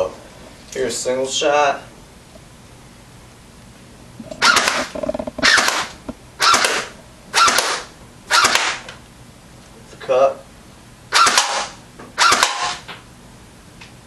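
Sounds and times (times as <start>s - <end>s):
airsoft gun firing single shots: 4.4s - 4.8s, 5.4s - 8.8s, 11.1s - 12.9s.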